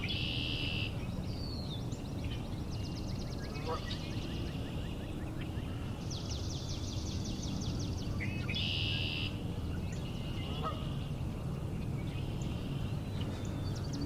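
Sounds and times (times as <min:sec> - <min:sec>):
bird song with buzzy trill: 0:00.0 - 0:14.0
steady low rumble: 0:00.0 - 0:14.0
geese calling faintly: 0:03.4 - 0:05.0, 0:10.0 - 0:11.2.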